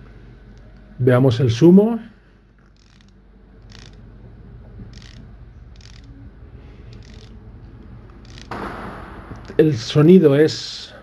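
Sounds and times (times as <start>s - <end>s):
watch bezel ratchet clicks: 2.6s - 4.0s, 4.9s - 6.1s, 6.9s - 7.4s, 8.2s - 8.5s.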